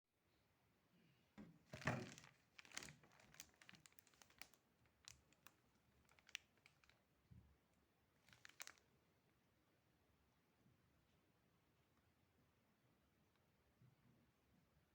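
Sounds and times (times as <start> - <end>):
faint clicks and crinkling ticks: 1.8 - 7.0, 8.2 - 8.9.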